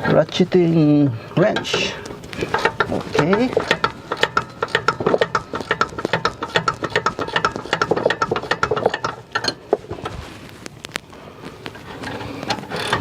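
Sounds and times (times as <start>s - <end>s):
ratcheting wrench clicking: 1.5s - 9.8s, 12.0s - 13.0s.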